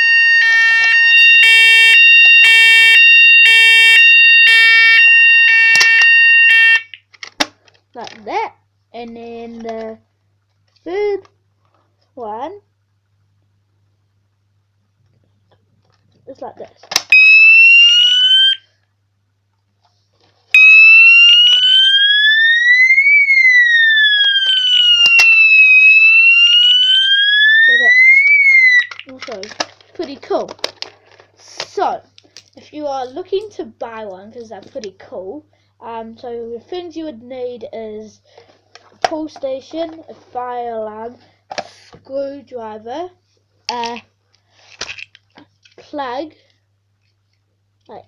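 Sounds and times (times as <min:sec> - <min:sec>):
two-tone electronic alarm: 0:00.0 - 0:07.0, 0:17.1 - 0:18.6, 0:20.6 - 0:29.0.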